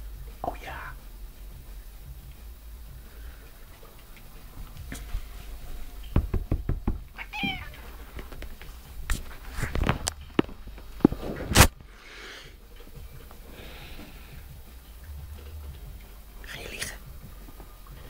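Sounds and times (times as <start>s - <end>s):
sharp knocks and taps: 6.1s - 9.2s
cat meowing: 7.1s - 8.0s.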